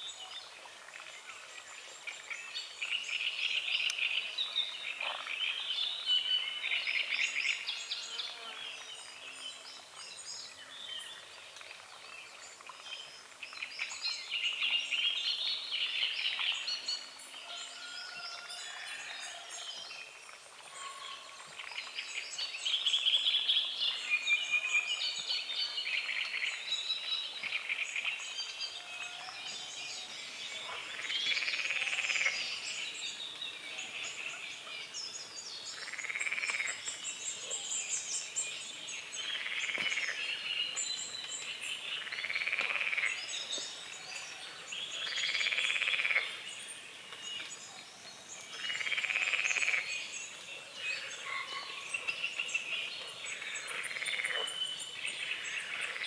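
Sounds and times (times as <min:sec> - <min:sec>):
birds chirping and singing: 0:12.9 - 0:56.0
frogs croaking: 0:30.5 - 0:32.9, 0:35.7 - 0:37.0, 0:39.0 - 0:43.4, 0:44.9 - 0:46.5, 0:48.5 - 0:52.4, 0:53.2 - 0:56.0.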